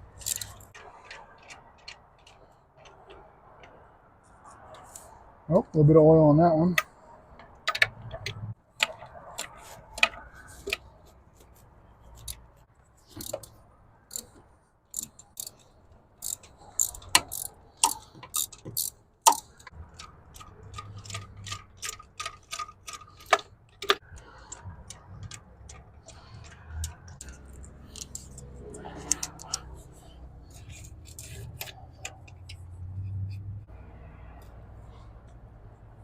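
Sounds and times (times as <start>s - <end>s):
hand ratchet clicking: 0.1s - 3.0s, 14.9s - 15.6s, 16.2s - 29.8s, 30.5s - 33.5s
sharp metal tool clicks: 16.2s - 29.7s.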